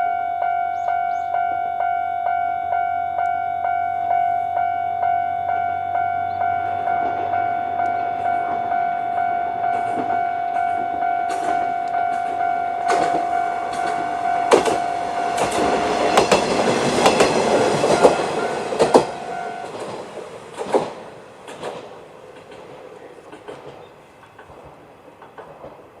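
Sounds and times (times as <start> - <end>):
level-crossing electronic bell: 0.0 - 19.9
train wheels clicking over rail joints: 6.4 - 26.0.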